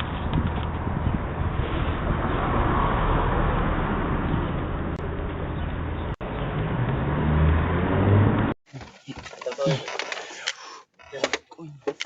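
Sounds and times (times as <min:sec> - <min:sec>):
motor vehicle running: 0:00.0 - 0:08.9.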